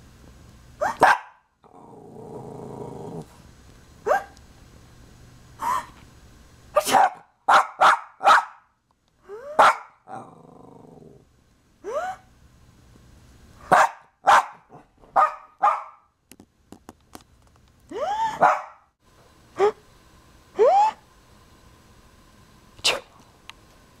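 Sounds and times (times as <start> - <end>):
dog barking: 0.8 - 1.4, 4.0 - 4.4, 6.8 - 8.7, 9.6 - 10.0, 13.7 - 16.1, 18.4 - 18.8
dog yelping: 0.8 - 1.4, 4.1 - 4.4
dog growling: 1.6 - 3.4, 10.1 - 11.2.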